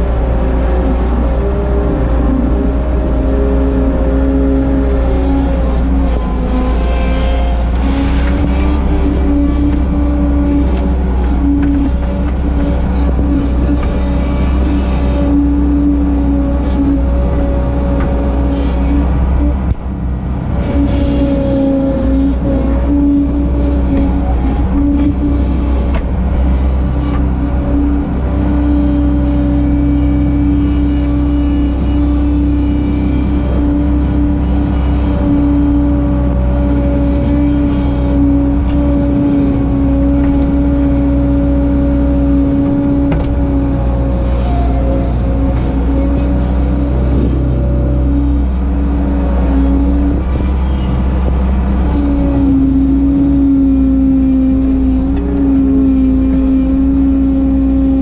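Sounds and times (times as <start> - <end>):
skid steer engine at high revs: 0.0 - 58.0.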